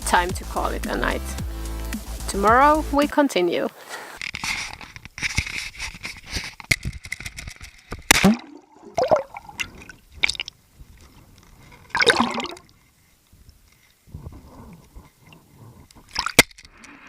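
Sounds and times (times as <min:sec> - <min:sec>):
water splashing and dripping: 0:08.1 - 0:10.6, 0:11.8 - 0:12.7.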